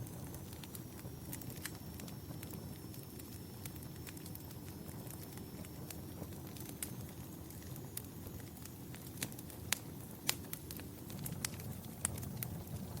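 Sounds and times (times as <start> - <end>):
fire crackling and popping: 0.0 - 13.0
low rumble of flames: 0.0 - 13.0.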